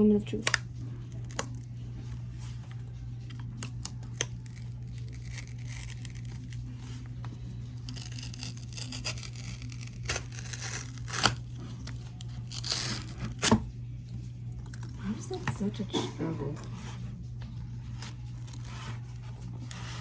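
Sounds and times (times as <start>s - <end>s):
cardboard packaging tearing: 3.5s - 13.7s, 18.0s - 20.0s.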